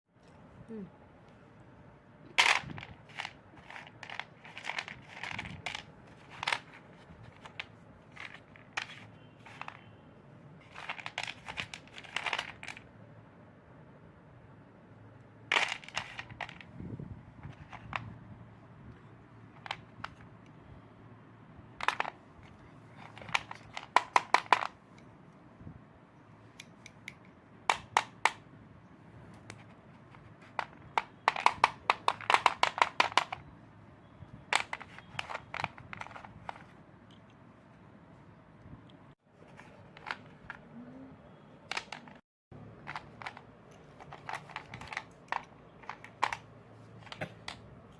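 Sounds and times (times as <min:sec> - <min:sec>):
pencils crunching and snapping: 0:02.4 - 0:09.9, 0:10.6 - 0:12.8, 0:21.8 - 0:24.8, 0:30.4 - 0:33.4, 0:34.6 - 0:36.8, 0:41.7 - 0:46.4.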